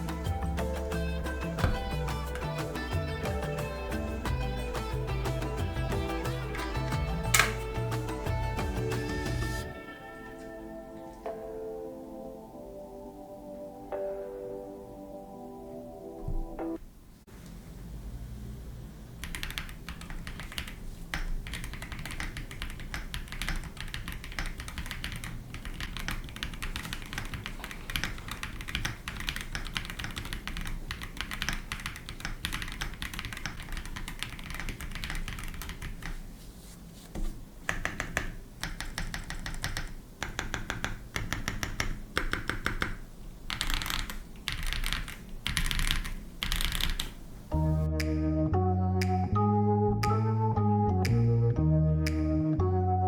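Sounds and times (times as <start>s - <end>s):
keyboard typing: 0.0s - 9.7s, 19.2s - 36.3s, 37.7s - 48.4s.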